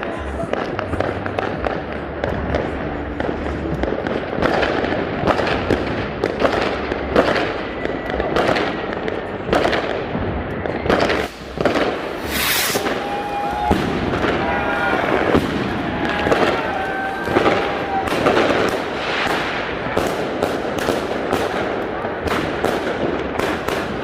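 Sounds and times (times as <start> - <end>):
fireworks bangs and crackles: 0.0 - 24.0
firework hissing burst: 11.0 - 19.9.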